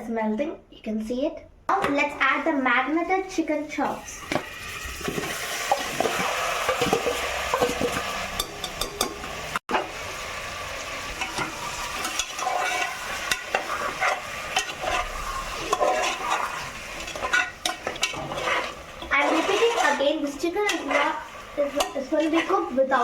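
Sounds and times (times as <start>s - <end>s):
chicken sizzling in a pan: 3.9s - 23.0s
spatula scraping a pan: 11.1s - 23.0s.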